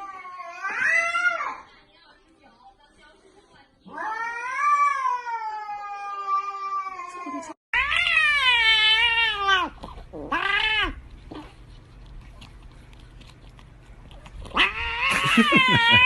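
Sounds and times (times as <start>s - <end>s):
cat yowling: 0.0s - 1.6s, 3.9s - 7.1s, 7.8s - 11.0s, 14.5s - 16.0s.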